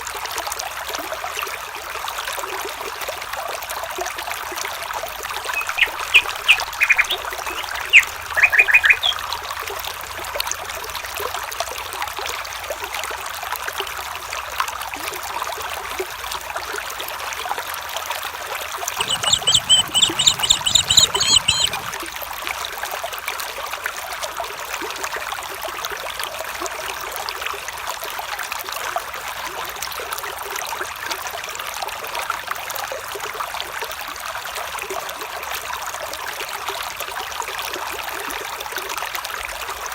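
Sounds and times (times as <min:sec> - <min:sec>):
stream trickling: 0:00.0 - 0:39.9
bird chirps: 0:05.4 - 0:09.4, 0:19.0 - 0:22.0
bird repeated high notes: 0:19.0 - 0:21.9.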